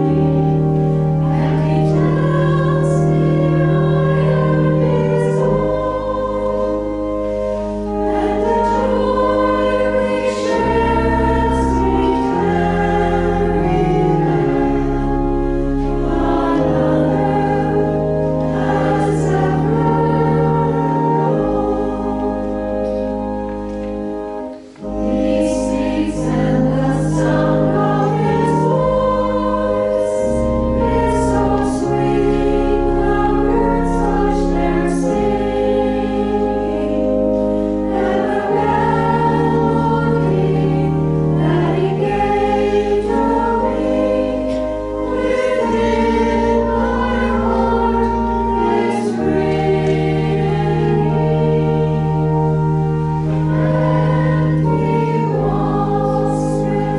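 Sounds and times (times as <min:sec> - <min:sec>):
low held accompaniment notes: 0:00.0 - 0:56.9
many voices singing a hymn: 0:00.0 - 0:56.9.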